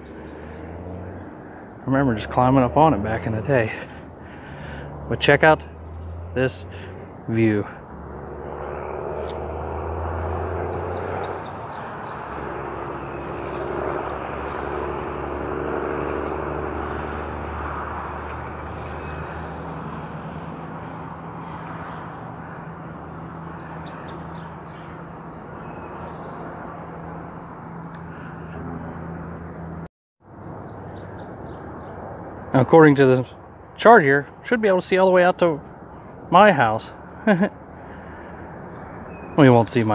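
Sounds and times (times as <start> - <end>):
low hum: 0.0 - 29.9
distant engine drone: 0.0 - 39.9.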